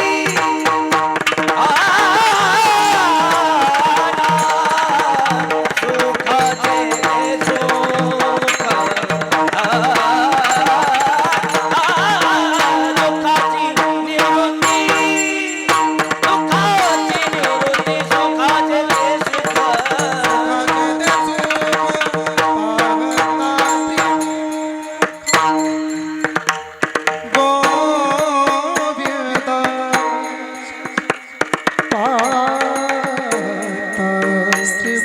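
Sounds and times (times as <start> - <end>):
hand drum beating fast: 0.0 - 24.4, 25.0 - 33.6
sustained wavering melody: 29.8 - 35.0.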